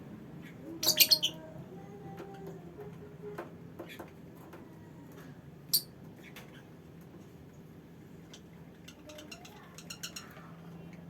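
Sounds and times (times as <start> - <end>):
lovebirds ticking and clicking: 8.2 - 11.0.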